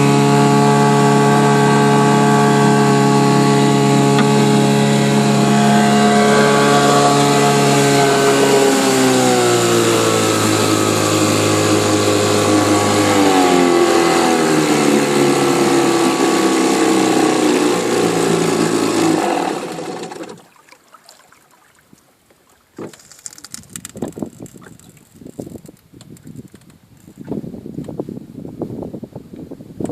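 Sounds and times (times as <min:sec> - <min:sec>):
outboard motor running: 0:00.0 - 0:21.8.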